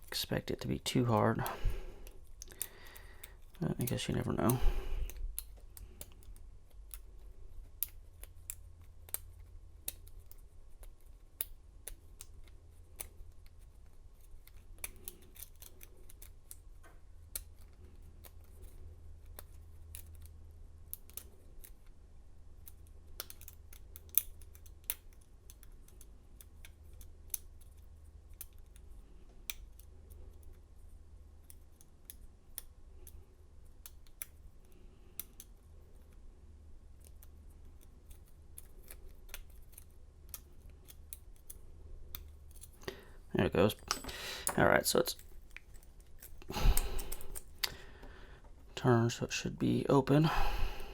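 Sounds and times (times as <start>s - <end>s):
low steady hum: 0.0s - 50.9s
lock pick clicking: 43.8s - 44.6s, 46.8s - 47.8s.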